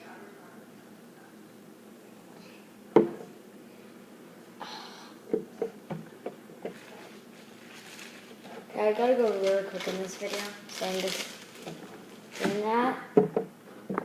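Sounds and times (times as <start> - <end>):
knocks of objects on tabletop: 13.2 - 14.0.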